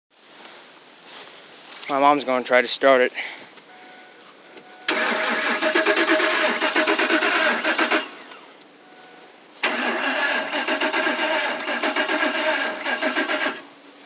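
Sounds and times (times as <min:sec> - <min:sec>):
engine cranking on starter: 0:04.9 - 0:08.5, 0:09.6 - 0:13.7.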